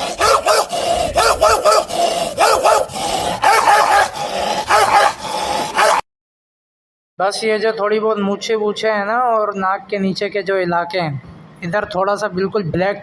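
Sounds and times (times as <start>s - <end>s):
person imitating dog barking: 0.0s - 6.0s.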